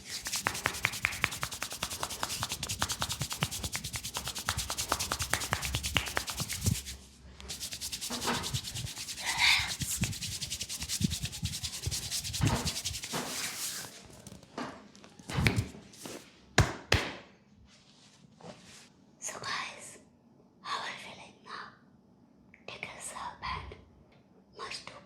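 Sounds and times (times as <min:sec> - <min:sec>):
hand rubbing on skin: 0:00.0 - 0:14.4, 0:15.3 - 0:16.2
taps and knocks: 0:16.6 - 0:17.2.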